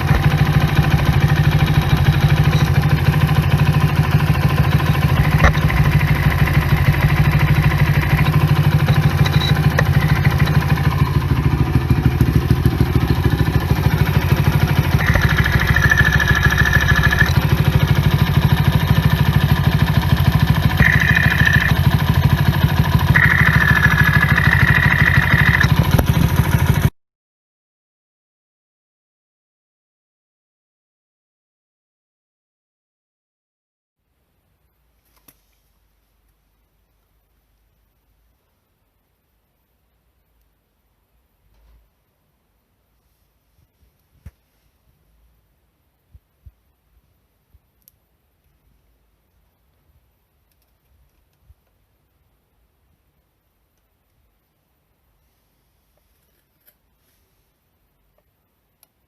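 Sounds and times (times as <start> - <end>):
high whine: 0.0 - 19.1, 20.2 - 26.8
small engine idling with clatter: 0.0 - 26.9.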